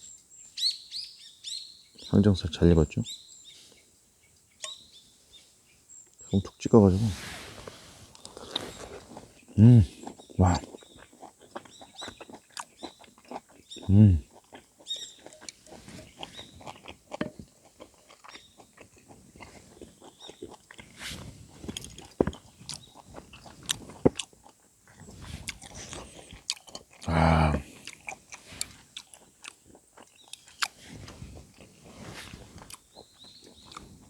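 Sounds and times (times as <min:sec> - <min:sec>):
close-up chewing: 0:07.5 - 0:34.0.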